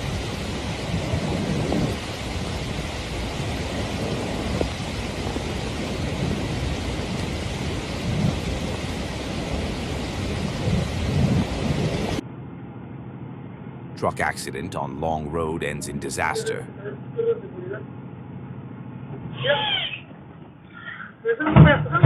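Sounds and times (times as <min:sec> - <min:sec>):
heavy rain and water rushing: 0:00.0 - 0:12.2.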